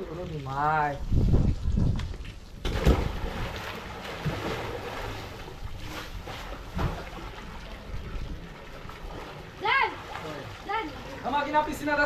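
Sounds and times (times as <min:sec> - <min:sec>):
waterfall splashing into pool: 0:02.6 - 0:04.8.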